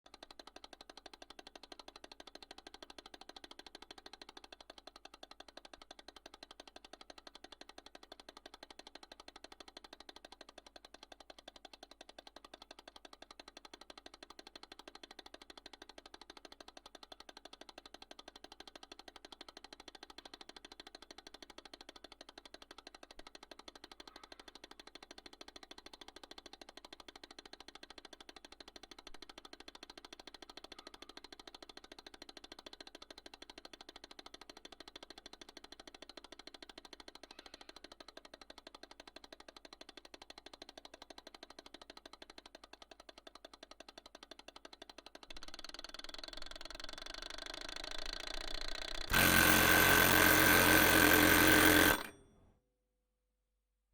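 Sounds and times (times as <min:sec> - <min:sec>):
mechanical timer ticking: 0:25.2 - 0:52.2.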